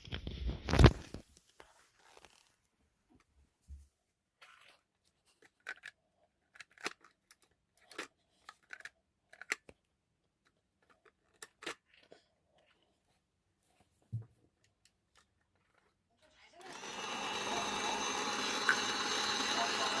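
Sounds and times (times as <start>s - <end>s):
crinkling rustles: 0.0s - 2.8s.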